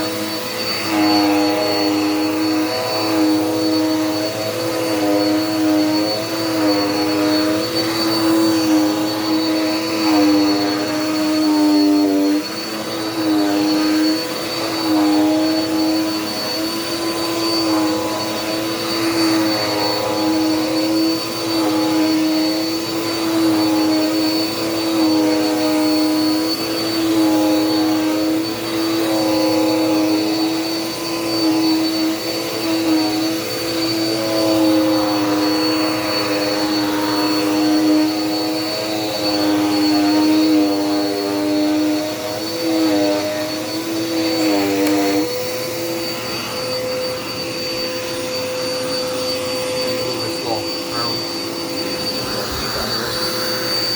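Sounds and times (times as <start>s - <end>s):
vacuum cleaner running: 0.0s - 53.9s.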